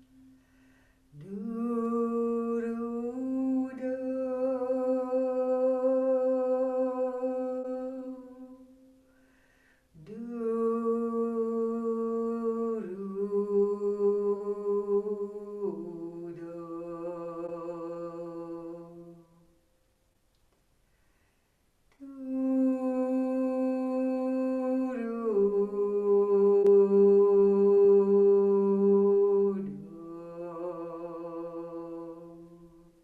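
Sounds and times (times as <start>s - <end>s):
woman humming long notes: 22.0s - 32.9s.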